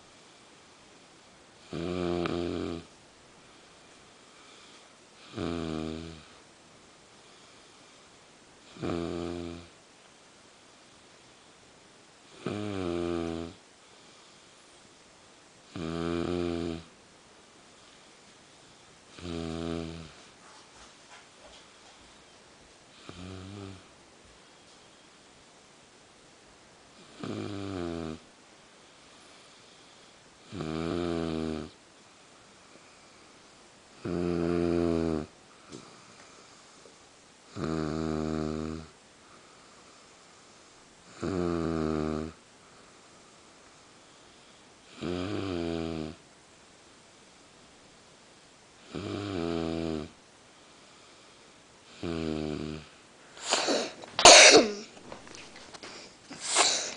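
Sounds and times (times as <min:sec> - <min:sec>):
woman snoring: 0:01.7 - 0:02.9, 0:05.2 - 0:06.2, 0:08.7 - 0:09.7, 0:12.4 - 0:13.6, 0:15.7 - 0:16.9, 0:19.2 - 0:20.1, 0:23.0 - 0:23.8, 0:27.0 - 0:28.2, 0:30.5 - 0:31.8, 0:34.0 - 0:35.3, 0:37.5 - 0:38.9, 0:41.2 - 0:42.4, 0:45.0 - 0:46.2, 0:48.9 - 0:50.2, 0:52.0 - 0:52.9
rough bursts of breath: 0:53.3 - 0:56.9.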